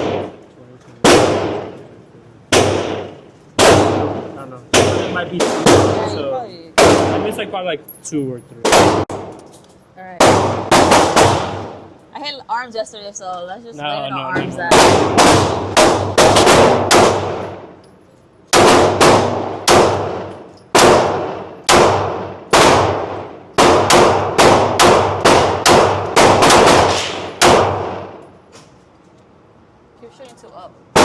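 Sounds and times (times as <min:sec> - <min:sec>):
gunshots with echoing tail: 0:00.0 - 0:00.4, 0:01.0 - 0:01.8, 0:02.5 - 0:07.5, 0:08.6 - 0:09.3, 0:10.2 - 0:11.9, 0:14.7 - 0:17.8, 0:18.5 - 0:28.2.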